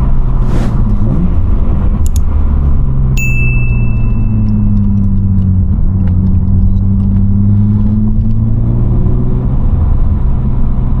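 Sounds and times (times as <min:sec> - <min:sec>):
car engine exhaust drone: 0:00.0 - 0:11.0.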